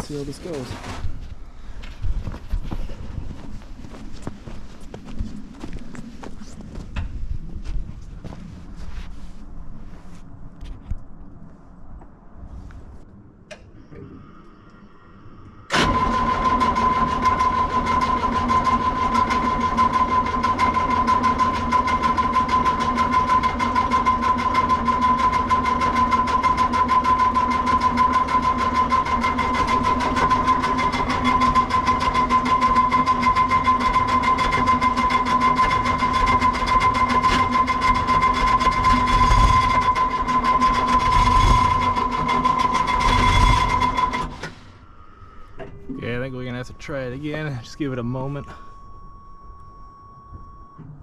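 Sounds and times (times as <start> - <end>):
engine starter cranking: 15.7 - 44.8.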